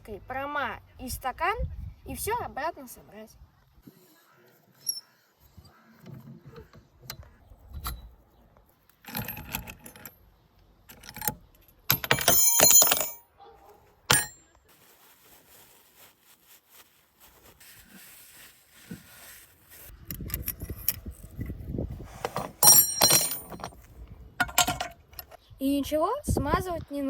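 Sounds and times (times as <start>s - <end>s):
metal parts clicking and clinking: 9.0s - 10.2s, 10.9s - 13.2s, 14.1s - 14.4s, 22.2s - 25.4s
ringing metallic jangle: 11.9s - 13.2s, 14.1s - 14.4s, 22.6s - 23.7s.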